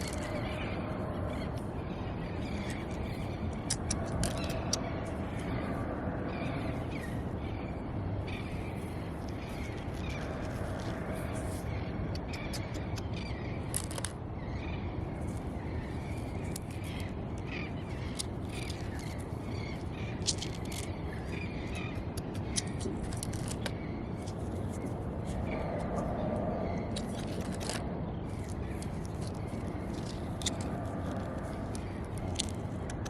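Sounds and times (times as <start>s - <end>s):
steady rushing noise: 0.0s - 33.0s
sharp clicks: 12.1s - 14.1s.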